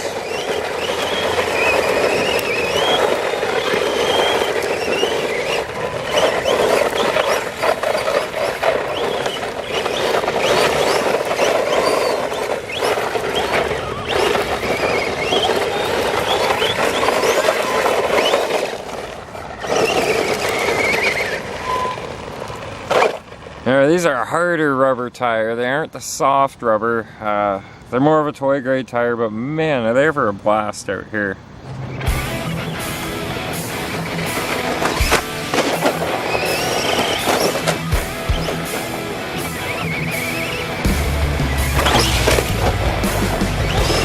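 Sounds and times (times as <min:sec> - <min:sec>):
tyres scrabbling on loose dirt: 0:00.0 - 0:44.0
electric motor whine: 0:31.6 - 0:44.0.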